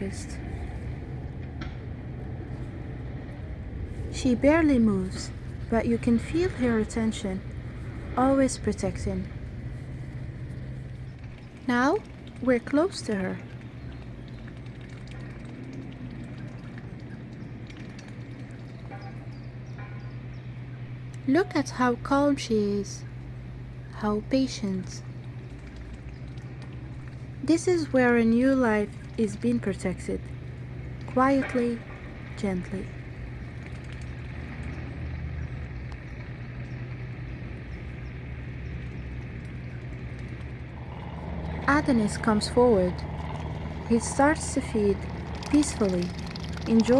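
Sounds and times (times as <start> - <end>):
low background rumble: 0.0 - 46.9
steady low hum: 0.0 - 46.9
small birds chirping: 10.1 - 21.6, 24.6 - 27.4, 32.6 - 46.9.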